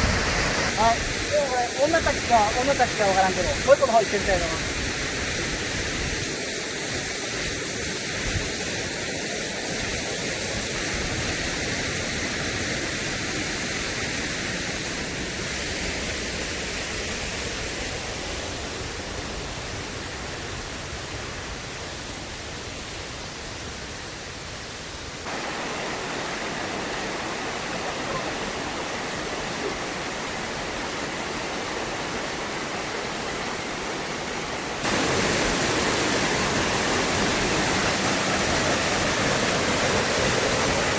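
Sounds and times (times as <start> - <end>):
waterfall rushing: 0.0 - 40.9.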